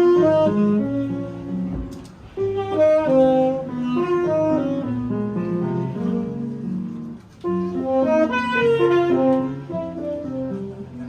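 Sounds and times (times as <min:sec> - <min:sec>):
instrumental jazz music: 0:00.0 - 0:11.0.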